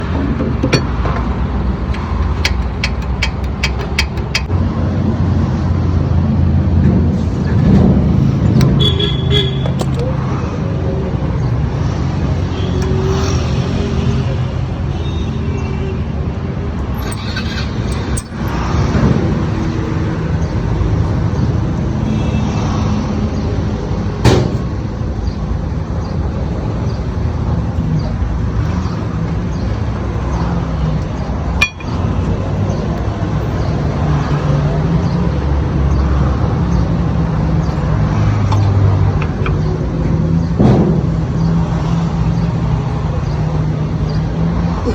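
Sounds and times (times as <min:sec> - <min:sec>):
vehicle engine running: 0:00.0 - 0:04.7
sharp clicks: 0:00.7 - 0:04.5.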